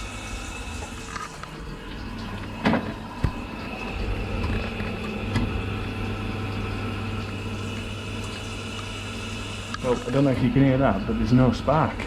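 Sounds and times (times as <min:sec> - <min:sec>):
boiler fan humming: 0:00.0 - 0:12.0.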